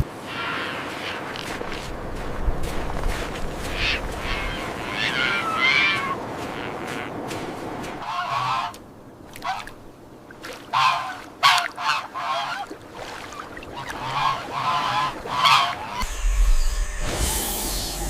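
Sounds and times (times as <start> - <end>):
geese honking: 3.7 - 7.2, 8.0 - 8.8, 10.7 - 12.7, 13.8 - 16.1.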